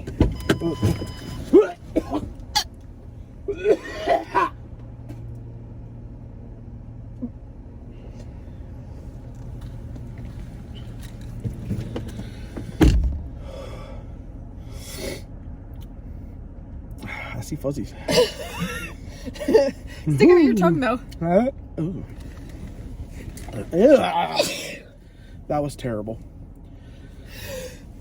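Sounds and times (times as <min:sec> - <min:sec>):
car idling hum: 0:00.0 - 0:28.0
thump: 0:12.8 - 0:13.3.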